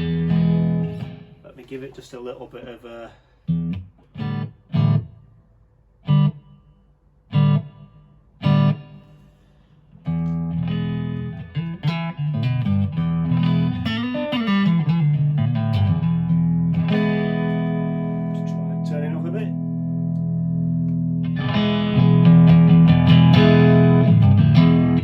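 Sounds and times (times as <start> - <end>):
electric guitar chords: 0.0 - 1.4, 3.5 - 5.2, 6.0 - 6.7, 7.3 - 9.2, 9.9 - 25.0.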